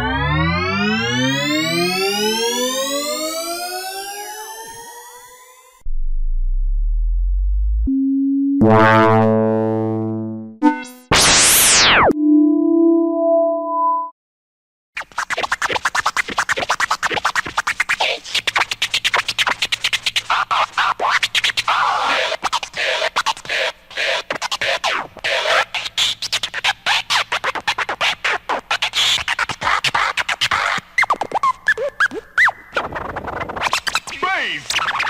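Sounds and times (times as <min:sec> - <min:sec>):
rising and falling pitch sweeps: 0:00.0 - 0:14.1
turntable scratching: 0:10.7 - 0:12.1, 0:15.0 - 0:35.0.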